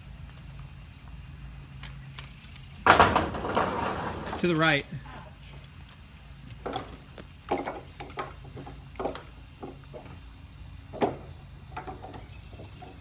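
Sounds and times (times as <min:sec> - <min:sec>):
knocks and clunks: 0:02.8 - 0:05.3, 0:10.9 - 0:13.0.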